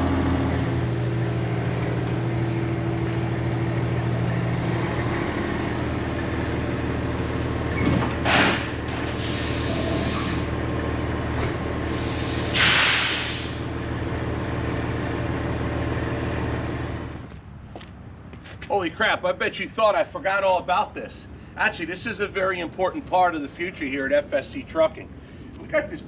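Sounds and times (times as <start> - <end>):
diesel truck engine running: 0.0 - 19.0
air brake hisses: 9.1 - 10.5, 11.8 - 13.7.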